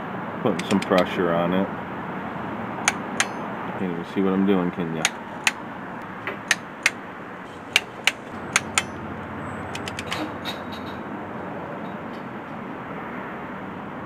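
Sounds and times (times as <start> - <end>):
torque wrench clicking: 0.6 - 1.1, 2.8 - 3.4, 5.0 - 5.6, 6.2 - 9.0, 9.6 - 10.3.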